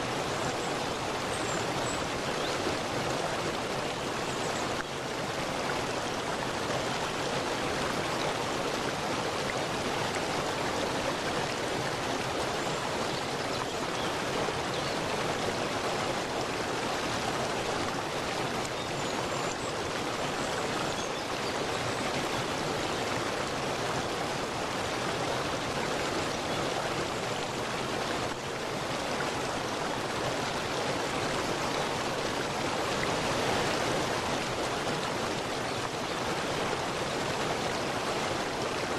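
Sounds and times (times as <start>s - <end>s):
running water rushing: 0.0s - 38.9s.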